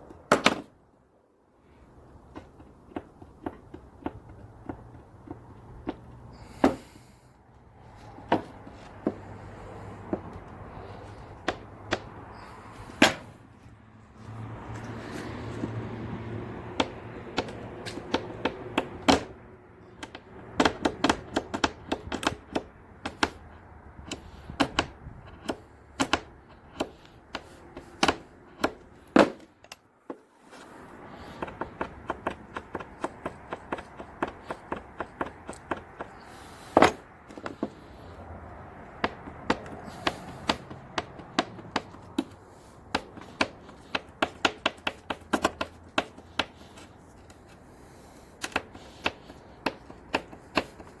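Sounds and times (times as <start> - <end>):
sharp clicks and knocks: 2.0 - 6.9, 8.0 - 13.4, 14.7 - 51.0.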